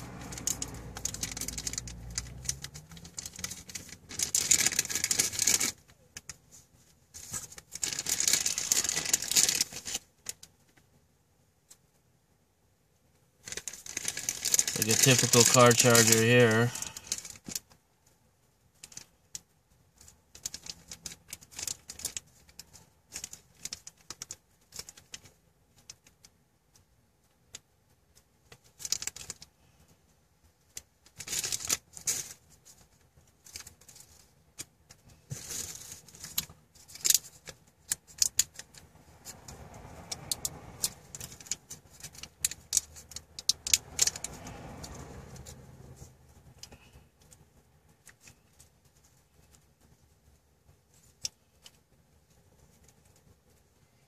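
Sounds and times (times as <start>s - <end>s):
cable rattling: 0.0s - 6.4s, 7.2s - 10.5s, 13.4s - 17.8s, 30.7s - 50.1s
rustling: 0.0s - 11.0s, 13.4s - 54.0s.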